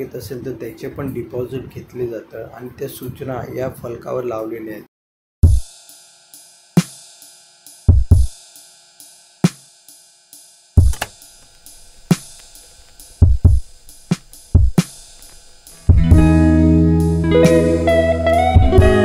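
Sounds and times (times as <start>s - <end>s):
drum beat with synth tones: 5.4s - 5.8s, 7.9s - 8.4s, 10.8s - 16.4s, 18.6s - 19.0s.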